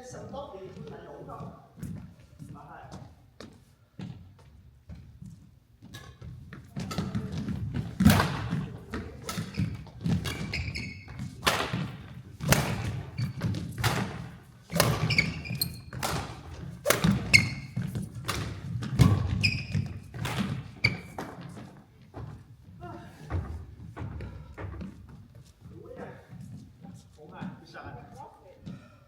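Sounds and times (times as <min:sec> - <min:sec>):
shoes squeaking on floor: 0:00.0 - 0:29.0
thudding footsteps on court: 0:00.2 - 0:28.9
racket hitting shuttlecock: 0:05.9 - 0:21.5.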